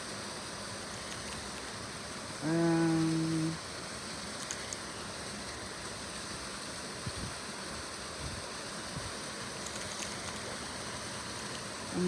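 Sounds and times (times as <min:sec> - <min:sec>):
steady outdoor noise: 0:00.0 - 0:12.0.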